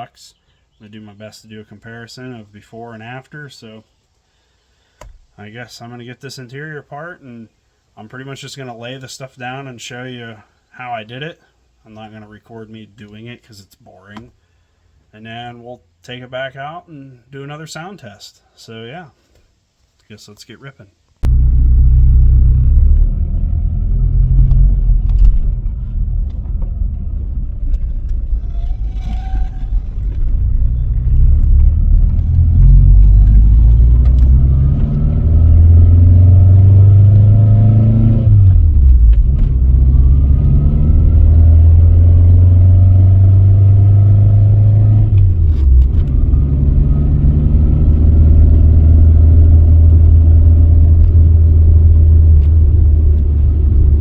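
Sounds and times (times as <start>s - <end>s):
car engine from inside cabin: 21.2s - 54.0s.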